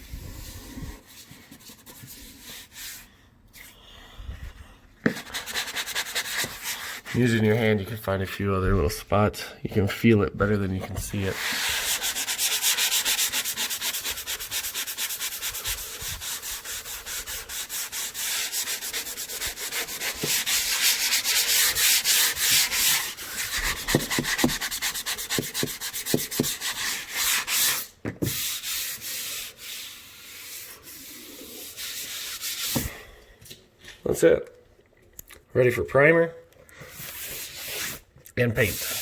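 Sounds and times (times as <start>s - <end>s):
sanding block scraping drywall: 0.0s - 3.1s, 5.0s - 7.7s, 10.9s - 32.9s, 36.9s - 39.0s.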